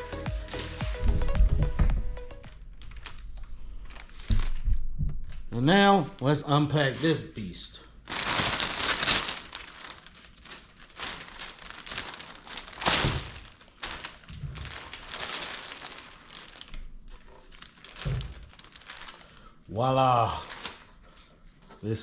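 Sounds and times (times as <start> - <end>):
packaging crinkling and tearing: 2.5 - 4.6, 8.1 - 19.6, 20.2 - 21.1.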